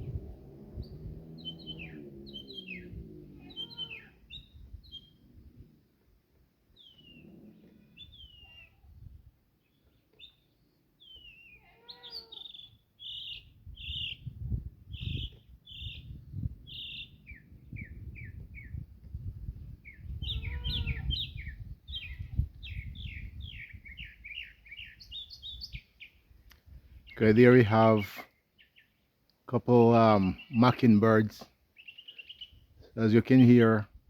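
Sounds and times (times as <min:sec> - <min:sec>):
mockingbirds singing: 0:00.0 - 0:06.1, 0:06.7 - 0:33.8
low background rumble: 0:00.0 - 0:08.4.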